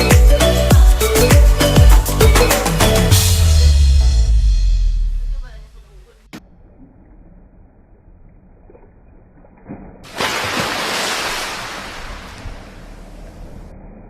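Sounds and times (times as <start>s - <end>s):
rushing water: 10.0s - 13.4s.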